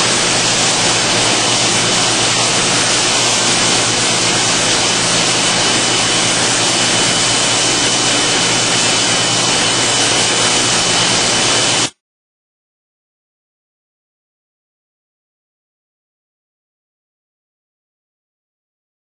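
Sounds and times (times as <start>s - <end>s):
thin high whine: 0.0s - 12.0s
washing machine rushing and humming: 0.0s - 12.0s.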